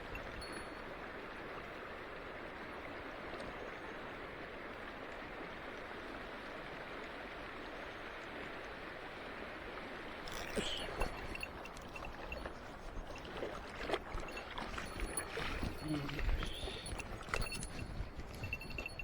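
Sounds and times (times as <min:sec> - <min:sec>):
mountain stream rushing: 0:04.2 - 0:19.0.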